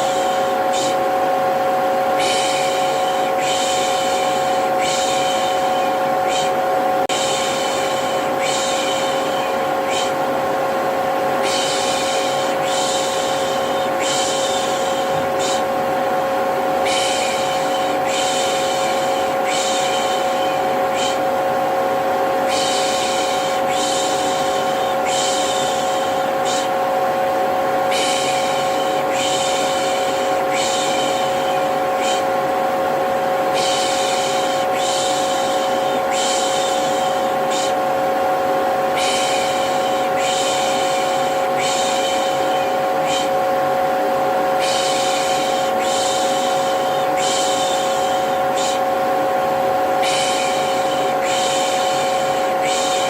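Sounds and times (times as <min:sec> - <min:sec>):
vacuum cleaner motor whine: 0:00.0 - 0:53.0.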